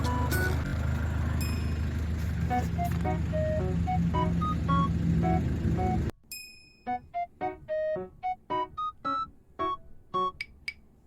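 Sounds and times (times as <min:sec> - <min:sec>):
vehicle engine droning: 0:00.0 - 0:06.1
bright keyboard melody: 0:02.5 - 0:06.2, 0:06.8 - 0:10.8.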